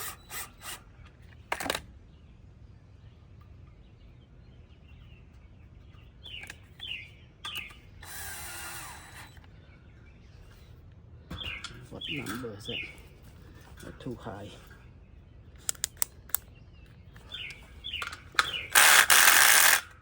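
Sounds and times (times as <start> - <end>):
power drill running: 0.0 - 0.8, 8.0 - 9.4, 18.4 - 20.0
bird chirping: 0.0 - 20.0.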